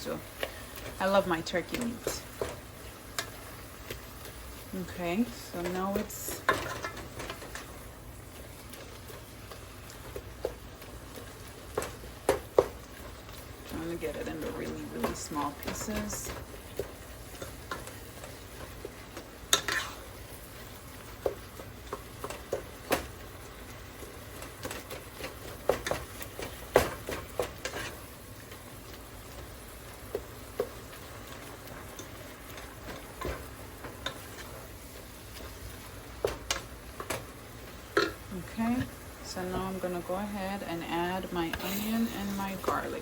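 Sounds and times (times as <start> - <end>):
meat frying in oil: 0.0 - 43.0
utensil scraping a pot: 19.5 - 20.1, 41.4 - 43.0.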